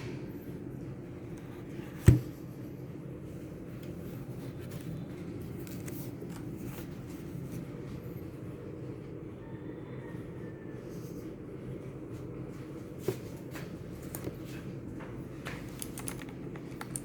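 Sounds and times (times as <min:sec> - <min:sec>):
steady low hum: 0:00.0 - 0:17.0
handling and rustling: 0:13.0 - 0:17.0.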